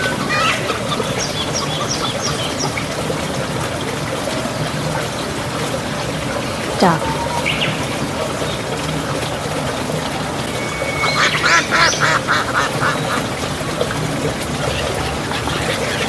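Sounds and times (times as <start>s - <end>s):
duck quacking: 11.1s - 13.3s.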